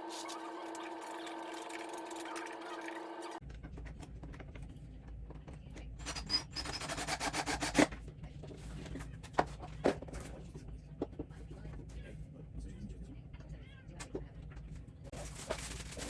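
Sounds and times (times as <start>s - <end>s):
hands rubbing and scraping parts: 6.0s - 10.6s.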